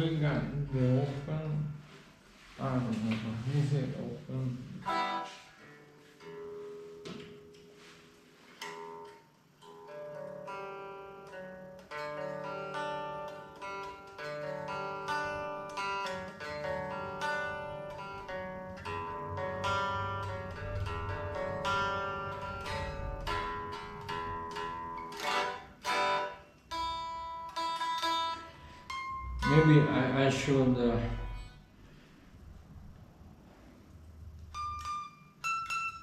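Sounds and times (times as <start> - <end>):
guitar picked and strummed: 4.8 - 31.6, 34.5 - 36.0.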